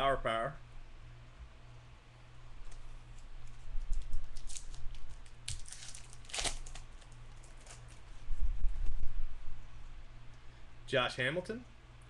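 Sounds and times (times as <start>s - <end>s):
steady low hum: 0.0s - 12.0s
foil wrapper crinkling: 3.4s - 8.0s.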